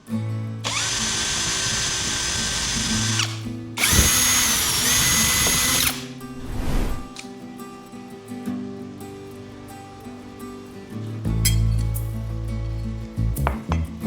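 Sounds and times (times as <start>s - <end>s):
soft background music: 0.2s - 14.0s
power tool motor whining: 0.6s - 7.2s.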